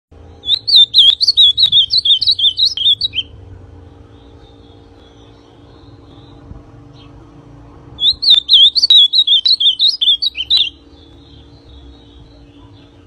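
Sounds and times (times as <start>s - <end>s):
faint steady hum: 0.1s - 13.0s
bird singing warbled whistles: 0.4s - 3.3s, 8.0s - 12.5s.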